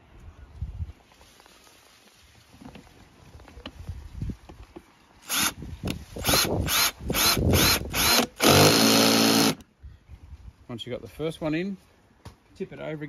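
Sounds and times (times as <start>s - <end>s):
power screwdriver motor: 5.2s - 5.6s, 6.2s - 9.6s.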